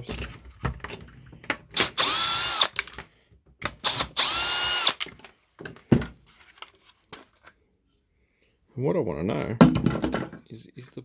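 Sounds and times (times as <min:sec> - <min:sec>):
drill motor whine: 0:01.8 - 0:02.8, 0:03.8 - 0:05.1.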